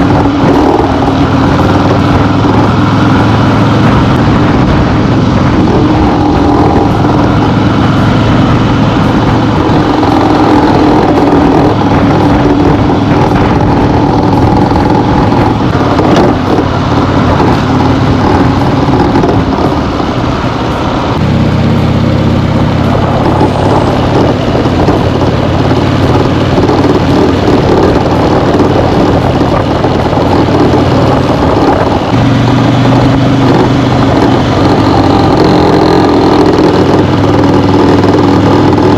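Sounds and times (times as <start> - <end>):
motorcycle engine running: 0.0 - 38.9
motorcycle rattling: 0.0 - 38.9.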